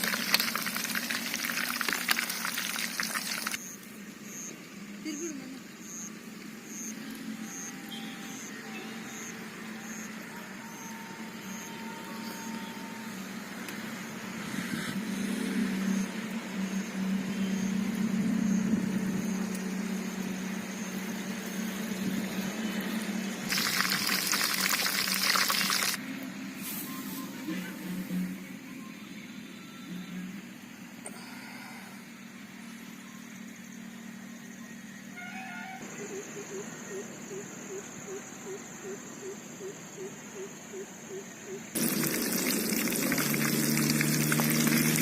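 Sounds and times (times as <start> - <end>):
chicken sizzling in frying oil: 0.0 - 3.6, 23.5 - 26.0, 41.8 - 45.0.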